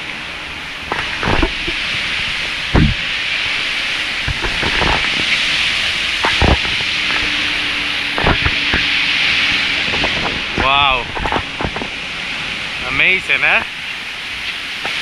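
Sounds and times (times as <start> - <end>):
fast-flowing water rushing: 0.0 - 15.0
dull thumps: 0.9 - 3.1.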